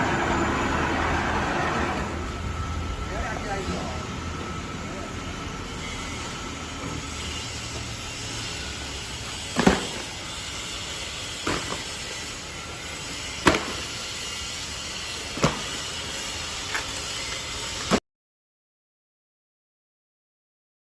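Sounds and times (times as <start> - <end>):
cutting machine hissing: 3.1 - 17.8.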